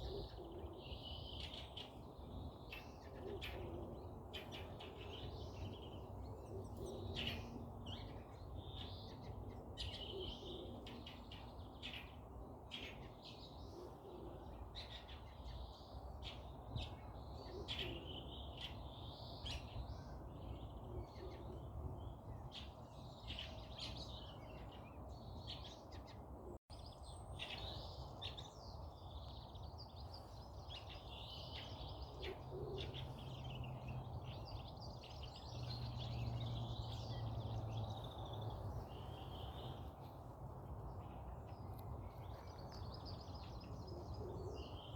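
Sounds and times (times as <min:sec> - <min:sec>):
birds chirping: 0:26.8 - 0:40.2.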